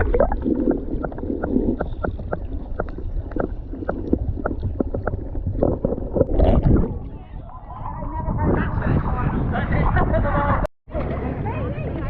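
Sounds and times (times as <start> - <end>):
wind buffeting microphone: 0.0 - 10.7.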